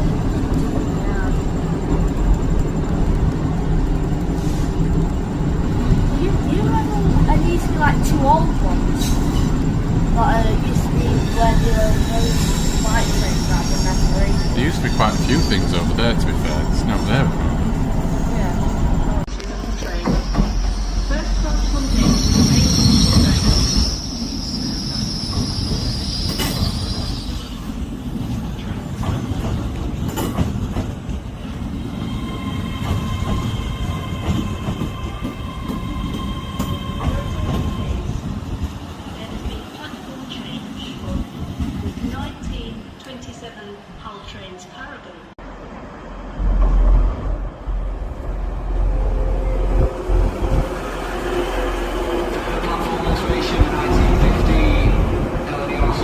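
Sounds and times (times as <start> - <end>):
train rumble: 0.0 - 56.0
train wheels squealing: 11.0 - 16.7, 19.9 - 27.7, 31.9 - 38.2.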